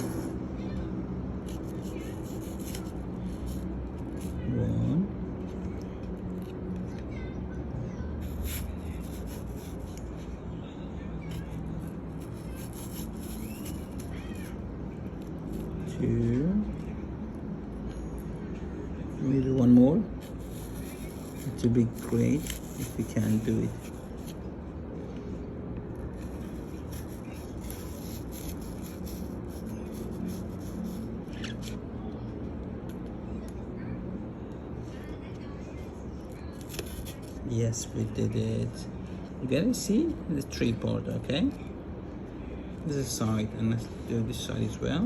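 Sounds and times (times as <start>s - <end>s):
knife cutting into an apple: 20.2s - 24.4s.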